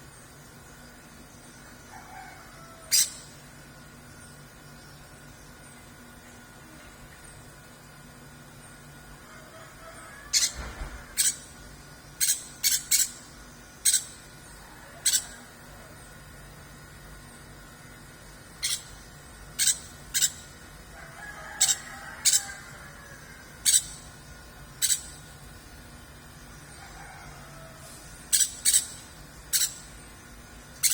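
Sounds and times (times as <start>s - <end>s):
distant rooster crow: 1.8s - 3.2s, 9.1s - 11.3s, 14.5s - 16.1s, 20.8s - 23.9s, 26.6s - 28.3s
songbird high chirps: 12.1s - 15.4s, 18.6s - 20.6s, 23.6s - 25.4s, 28.1s - 30.9s.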